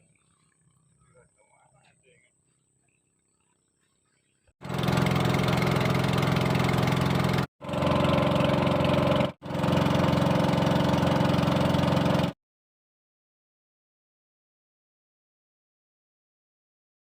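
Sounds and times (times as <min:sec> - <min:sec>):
engine running steadily: 0:04.6 - 0:12.4.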